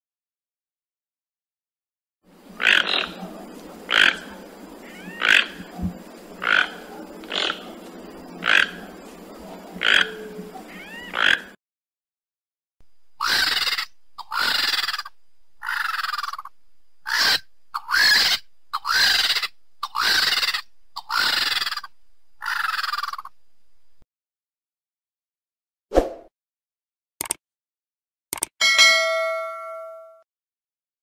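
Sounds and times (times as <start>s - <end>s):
animal calling: 2.5s - 11.6s, 13.2s - 23.4s.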